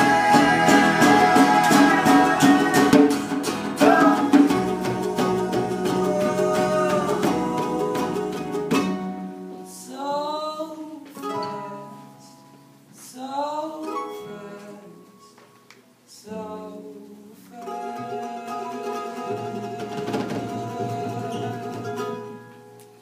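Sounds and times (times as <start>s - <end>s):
plucked string chords: 0.0s - 9.6s
person singing: 0.0s - 12.4s, 13.0s - 15.4s, 16.1s - 22.4s.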